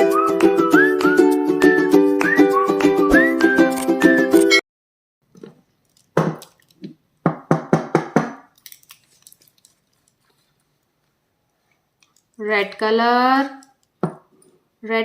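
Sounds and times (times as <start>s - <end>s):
hard objects knocking and clicking: 5.3s - 8.6s, 13.6s - 14.4s.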